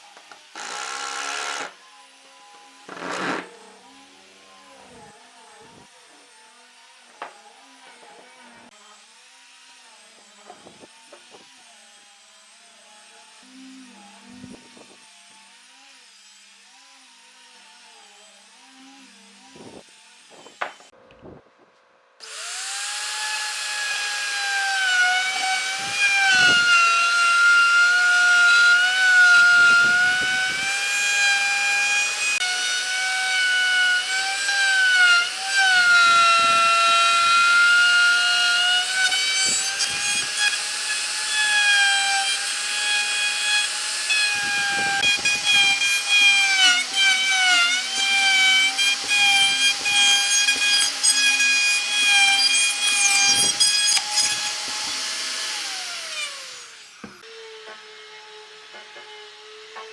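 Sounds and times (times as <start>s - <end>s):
electric power tool whining on wood: 0.0s - 21.0s, 22.2s - 59.9s.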